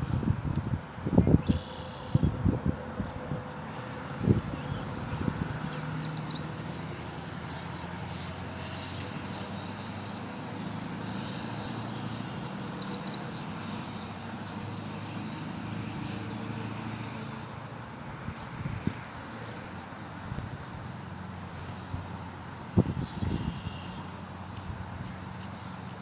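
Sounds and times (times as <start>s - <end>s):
small songbird singing: 4.3s - 15.0s, 18.2s - 20.9s, 23.0s - 24.1s, 25.4s - 26.0s.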